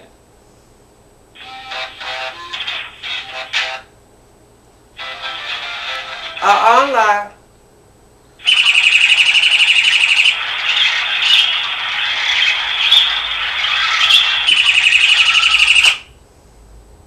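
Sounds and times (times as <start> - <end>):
bird chirp ringtone: 8.4 - 16.1.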